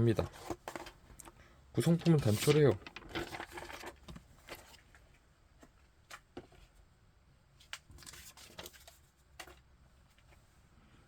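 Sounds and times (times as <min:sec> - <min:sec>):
packaging rustling: 0:01.9 - 0:04.8.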